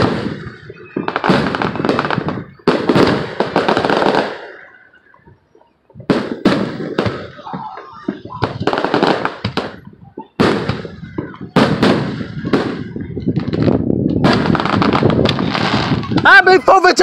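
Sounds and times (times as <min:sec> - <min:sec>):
fireworks exploding: 0:00.0 - 0:17.0
rapid crackling of fireworks: 0:00.0 - 0:17.0.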